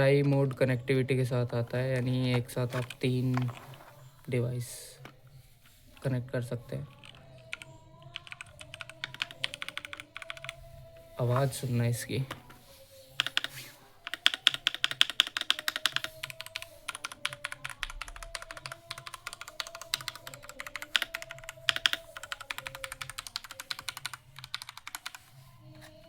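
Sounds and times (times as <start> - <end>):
mechanical keyboard typing: 6.9 - 10.6, 13.2 - 25.4.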